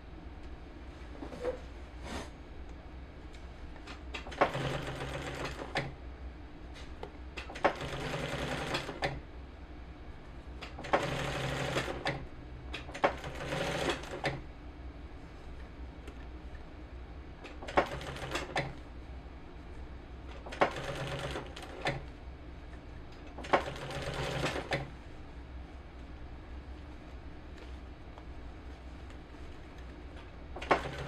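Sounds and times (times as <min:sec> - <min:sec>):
sewing machine stitching: 0:04.2 - 0:05.9, 0:07.4 - 0:09.2, 0:10.7 - 0:12.2, 0:12.8 - 0:14.4, 0:17.4 - 0:18.8, 0:20.4 - 0:22.0, 0:23.4 - 0:24.9, 0:30.6 - 0:31.0.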